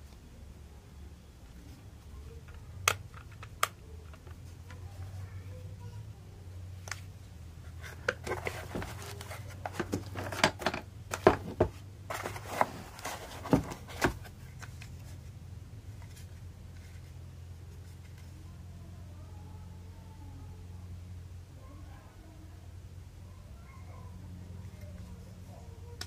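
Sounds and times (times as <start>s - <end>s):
packaging clicks and knocks: 7.9s - 14.3s.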